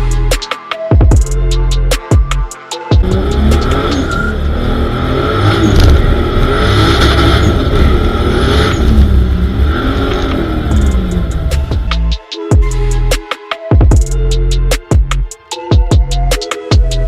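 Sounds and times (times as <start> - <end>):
turbocharged car engine revving: 3.0 - 12.1.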